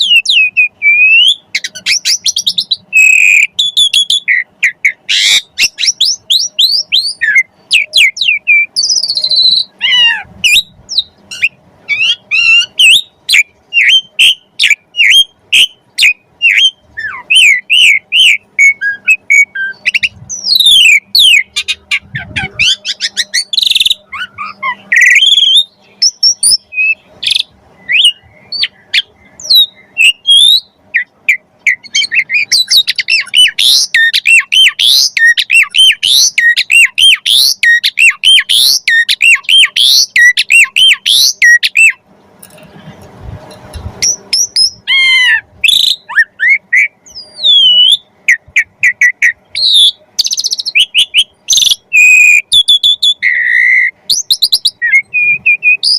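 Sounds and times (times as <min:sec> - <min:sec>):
starling singing: 0:00.0 - 0:42.6, 0:43.7 - 0:55.9
rustling noise: 0:42.5 - 0:44.3.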